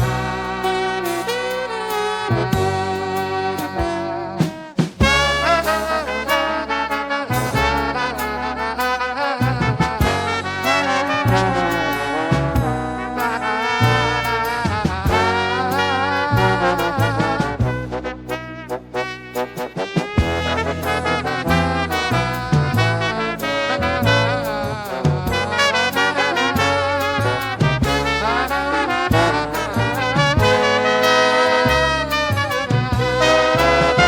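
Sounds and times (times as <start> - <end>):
swing jazz with brass horns: 0.0 - 34.0
drum beat: 3.8 - 6.2, 9.5 - 12.9, 14.6 - 15.8, 16.4 - 18.0, 19.8 - 23.4, 26.6 - 28.2.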